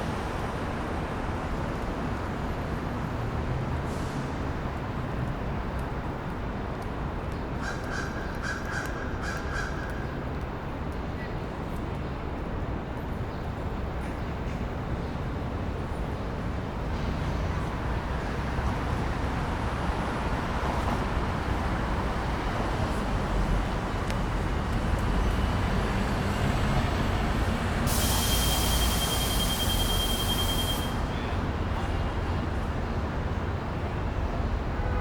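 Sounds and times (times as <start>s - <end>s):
passing vehicles: 13.6s - 35.0s.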